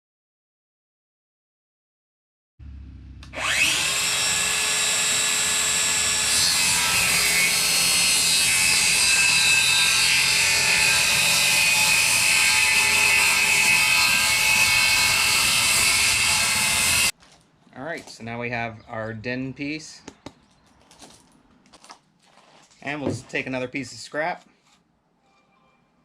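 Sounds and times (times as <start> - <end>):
electric saw cutting board: 2.6 - 17.1.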